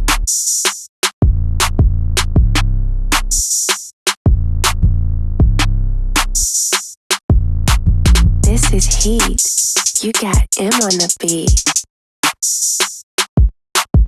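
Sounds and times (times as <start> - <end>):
deep bass notes: 0.0 - 0.3, 1.2 - 3.4, 4.3 - 6.5, 7.3 - 9.4
hi-hat ticks: 8.4 - 11.8.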